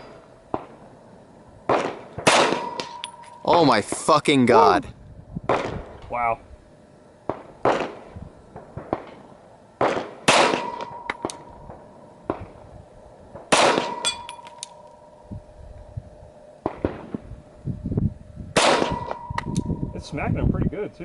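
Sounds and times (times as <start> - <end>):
pistol shots: 1.7 - 3.2, 7.3 - 8.0, 9.8 - 12.5, 13.3 - 14.4, 18.6 - 19.5
steel plate clanging and ringing: 2.6 - 3.8, 10.6 - 11.3, 13.8 - 15.2, 18.8 - 20.2.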